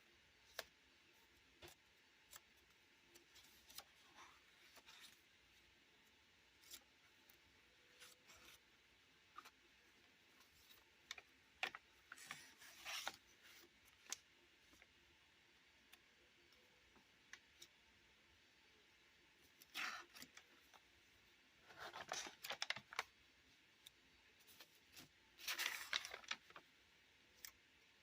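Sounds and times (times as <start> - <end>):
pages rustling and clicking: 21.7 - 23.1, 24.4 - 26.7.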